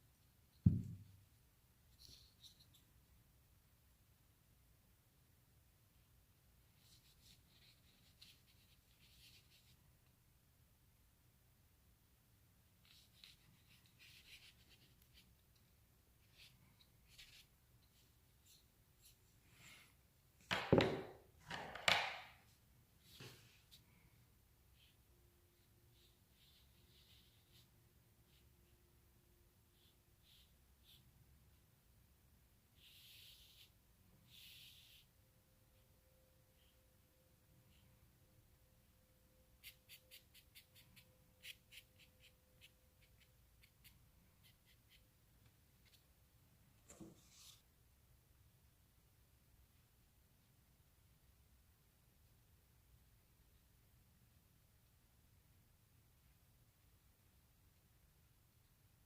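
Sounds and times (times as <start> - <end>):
pencil scratching on paper: 32.8 - 35.1, 39.6 - 45.1.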